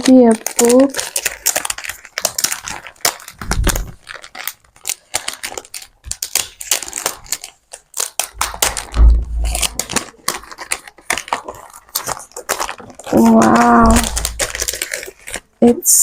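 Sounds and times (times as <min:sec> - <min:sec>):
packaging crinkling and tearing: 0:00.0 - 0:16.0
dull thumps: 0:08.9 - 0:09.7.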